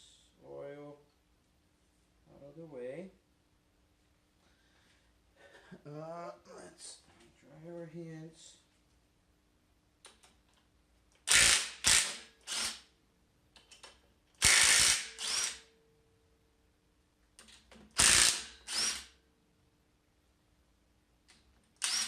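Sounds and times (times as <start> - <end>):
impact wrench bursts: 11.2 - 12.9, 14.4 - 15.7, 17.9 - 19.2, 21.8 - 22.0.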